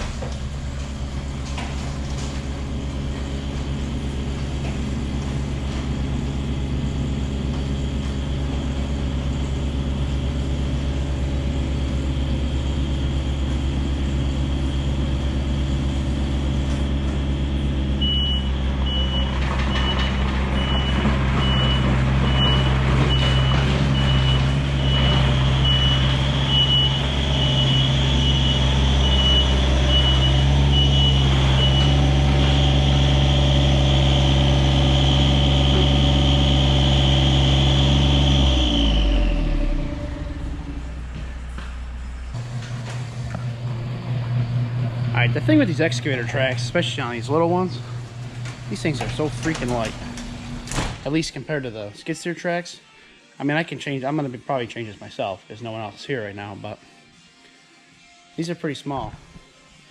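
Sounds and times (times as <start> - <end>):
heavy equipment diesel engine: 0.0 - 51.5
backup alarm beeping: 18.0 - 33.9.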